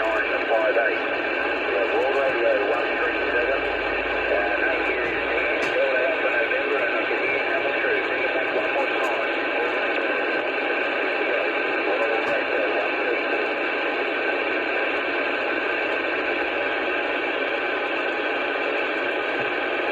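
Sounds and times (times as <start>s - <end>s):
radio static hiss: 0.0s - 19.9s.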